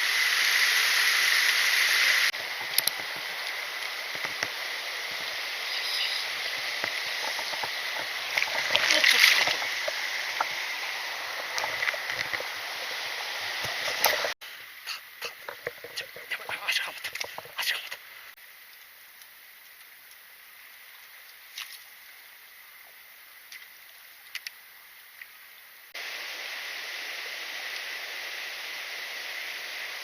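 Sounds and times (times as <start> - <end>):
stream water rushing: 0.0 - 14.4, 26.0 - 30.0
faint clicks: 23.5 - 24.6.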